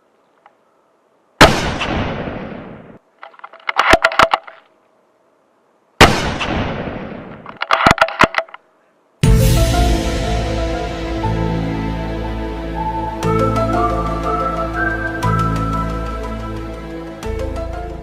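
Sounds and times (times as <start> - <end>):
music: 9.2 - 18.0.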